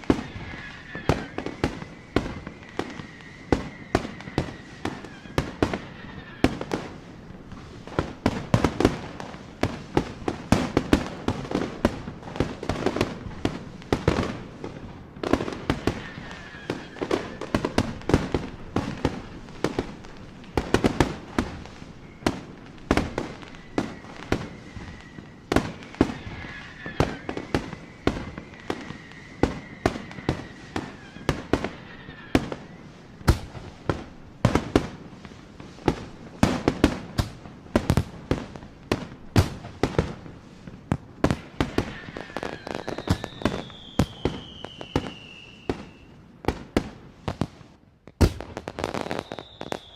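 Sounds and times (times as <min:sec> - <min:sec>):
faint high whistle: 0:00.0 - 0:06.5, 0:15.5 - 0:19.8, 0:20.7 - 0:33.8, 0:41.4 - 0:46.2, 0:48.8 - 0:49.9
fireworks and firecrackers banging: 0:00.0 - 0:49.9.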